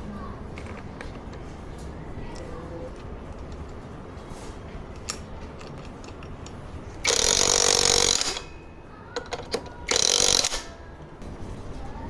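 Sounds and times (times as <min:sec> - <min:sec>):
metal tools clicking on engine parts: 0:05.0 - 0:08.6, 0:09.2 - 0:10.7
power tool burst: 0:07.0 - 0:08.4, 0:09.9 - 0:10.7.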